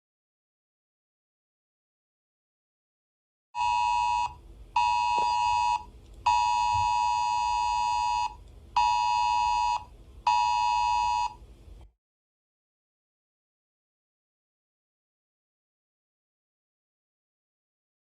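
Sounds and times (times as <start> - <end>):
harsh buzzing alarm tone: 3.6 - 11.4.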